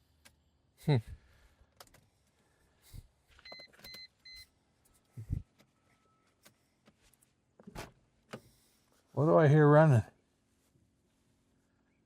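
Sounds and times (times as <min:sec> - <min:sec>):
short electronic beeps: 0:03.4 - 0:04.5.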